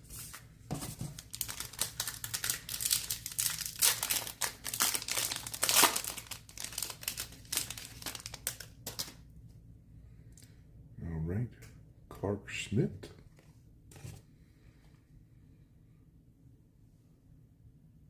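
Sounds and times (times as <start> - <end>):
foil wrapper crinkling: 0.9 - 9.2.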